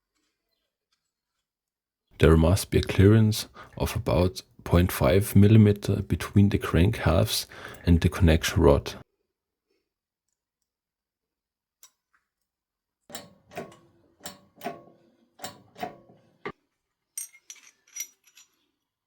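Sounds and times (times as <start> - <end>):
small metal parts clinking: 17.2 - 18.8.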